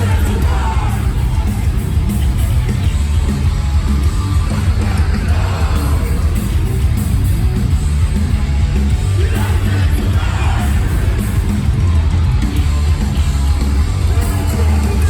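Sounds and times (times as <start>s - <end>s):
bass guitar: 0.0s - 15.0s
distorted guitars: 0.0s - 15.0s
drums: 0.0s - 15.0s.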